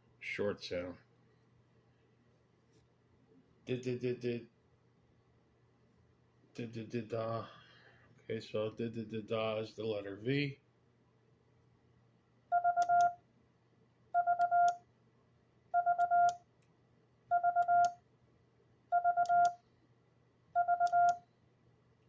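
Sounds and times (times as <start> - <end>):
morse code beeping tone: 12.5 - 13.2, 14.2 - 14.8, 15.8 - 16.4, 17.3 - 18.0, 18.9 - 19.6, 20.6 - 21.2.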